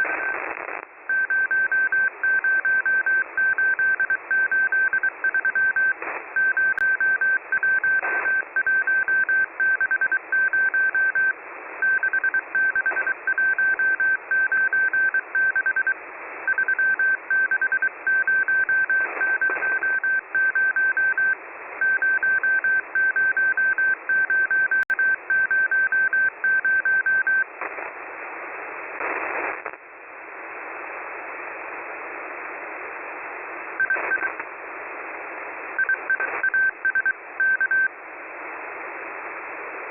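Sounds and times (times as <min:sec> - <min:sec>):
radio static hiss: 0:00.0 - 0:39.9
morse code beeps: 0:01.1 - 0:27.4, 0:35.8 - 0:37.9.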